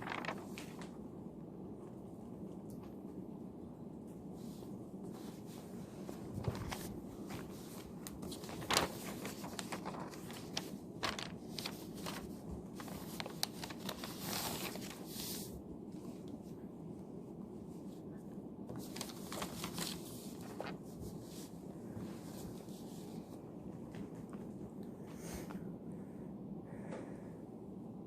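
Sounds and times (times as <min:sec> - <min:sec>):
paper rustling: 0:00.0 - 0:01.0, 0:04.4 - 0:15.6, 0:18.7 - 0:24.7
low room hiss: 0:00.0 - 0:28.0.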